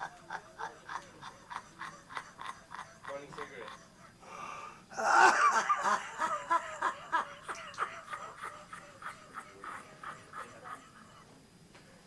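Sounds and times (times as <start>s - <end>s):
man's breathy bursts: 4.2s - 5.2s.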